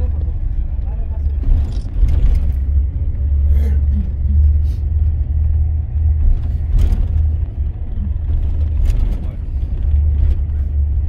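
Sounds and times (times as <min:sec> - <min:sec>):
bus engine and road rumble: 0:00.0 - 0:11.0.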